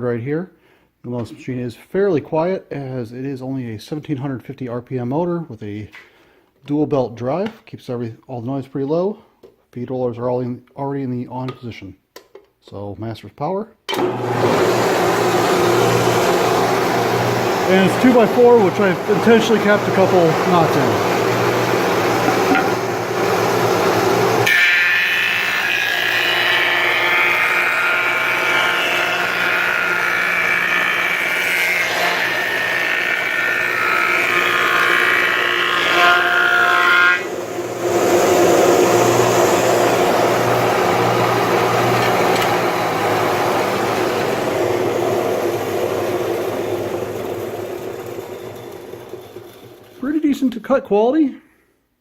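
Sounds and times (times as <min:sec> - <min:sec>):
planer motor running: 0:14.0 - 0:50.0
low rough machine noise: 0:14.3 - 0:29.4, 0:37.3 - 0:50.0
high-pitched planing noise: 0:14.4 - 0:26.7, 0:35.6 - 0:49.4.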